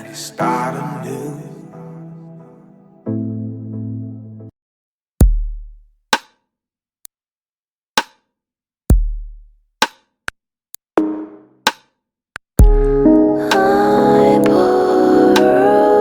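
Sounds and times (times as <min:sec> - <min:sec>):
deep booming kicks: 0:12.6 - 0:13.2
electronic drum-machine beat: 0:12.6 - 0:13.7
short chord: 0:12.6 - 0:16.0.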